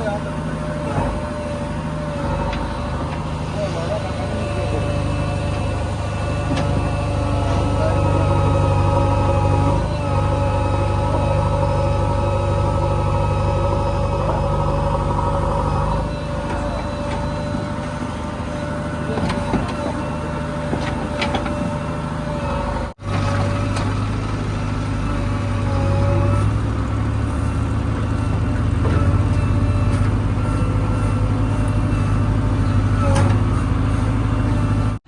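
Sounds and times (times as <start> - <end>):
heavy diesel engine running: 0.0 - 35.0.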